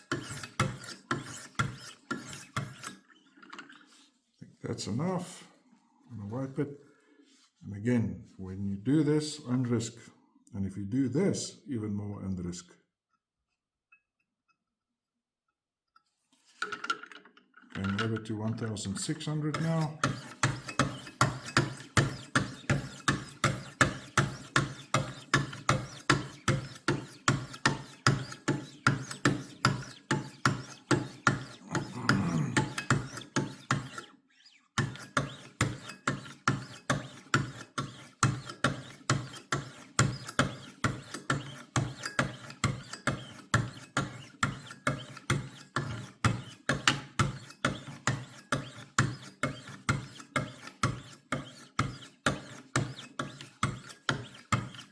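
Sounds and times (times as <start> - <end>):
sharpening stones stroking knife edge: 0.0 - 3.1, 19.6 - 34.1, 34.8 - 54.9.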